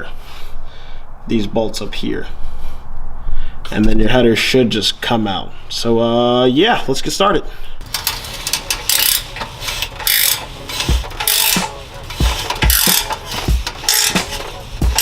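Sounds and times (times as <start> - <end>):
ratchet wrench clicking: 7.8 - 15.0
music beat with kick drum: 10.1 - 15.0.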